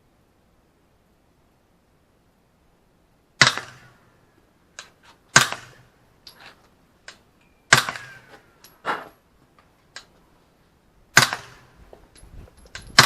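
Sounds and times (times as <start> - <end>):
loud gunshots: 3.4 - 4.0, 5.3 - 5.9, 7.7 - 8.3, 11.1 - 11.7.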